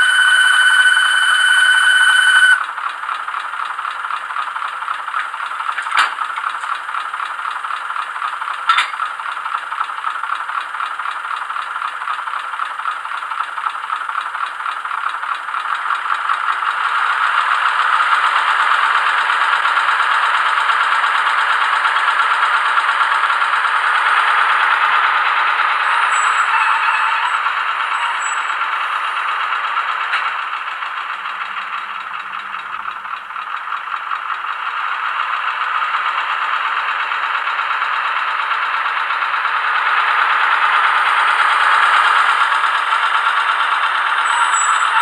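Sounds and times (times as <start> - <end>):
steady high tone: 0.0 - 2.6
model diesel engine chugging: 0.0 - 45.0.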